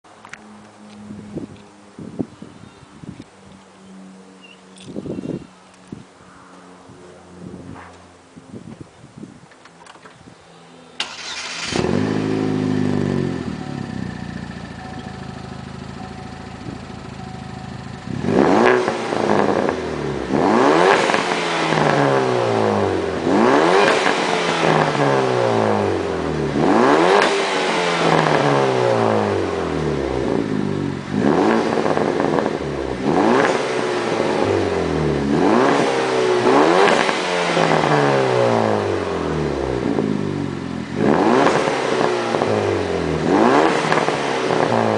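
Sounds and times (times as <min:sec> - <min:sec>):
car engine starting and idling: 0:10.9 - 0:44.9
car engine revving: 0:11.0 - 0:44.9.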